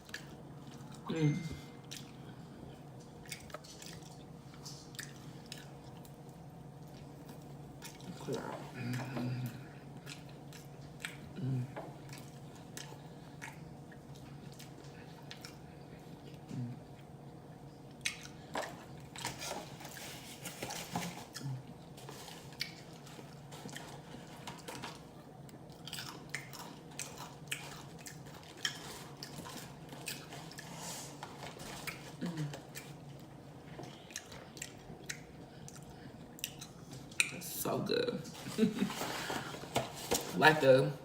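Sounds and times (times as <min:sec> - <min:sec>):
faint steady hum: 0:00.0 - 0:41.0
chewing and biting food: 0:01.8 - 0:37.3.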